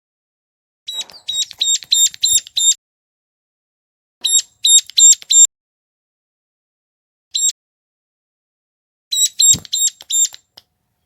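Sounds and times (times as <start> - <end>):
bird calling high rapid notes: 0.9 - 2.8.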